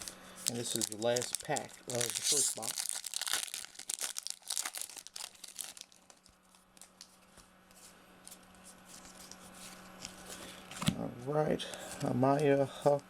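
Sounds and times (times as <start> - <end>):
foil wrapper tearing and crinkling: 0.0 - 7.1
cards rustling and clicking: 0.0 - 11.0.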